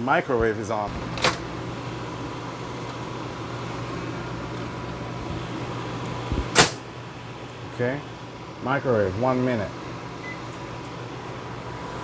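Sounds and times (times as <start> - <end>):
air conditioners humming: 0.0 - 12.0.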